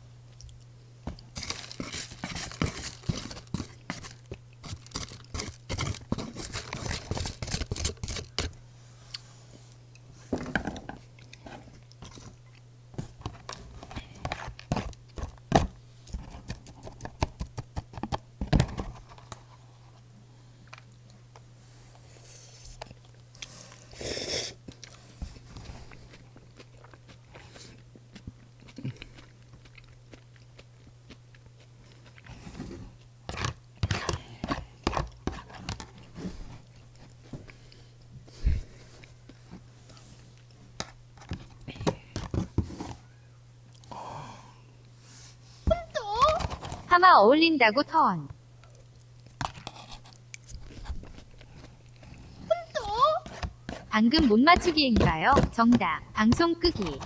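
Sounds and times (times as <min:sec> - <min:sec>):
low steady hum: 0:00.0 - 0:57.0
crunchy chewing: 0:00.3 - 0:10.1, 0:24.6 - 0:37.8.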